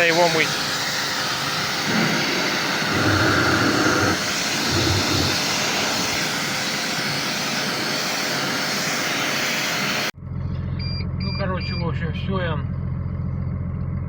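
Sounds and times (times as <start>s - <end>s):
pressure washer spraying water: 0.0s - 10.1s.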